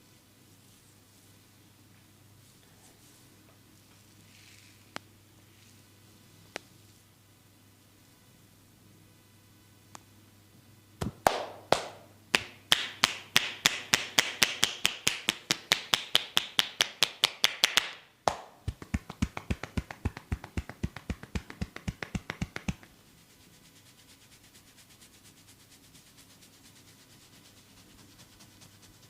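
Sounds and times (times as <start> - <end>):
hands slapping body in massage: 11.0 - 22.9.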